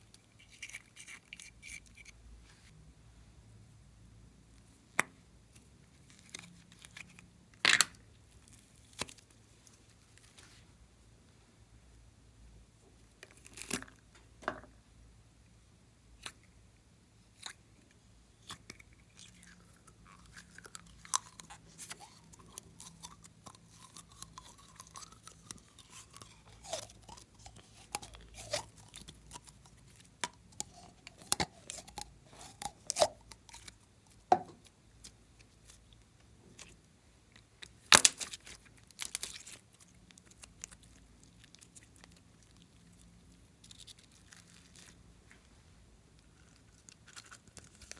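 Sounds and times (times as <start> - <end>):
slime squishing and popping: 37.7 - 42.7.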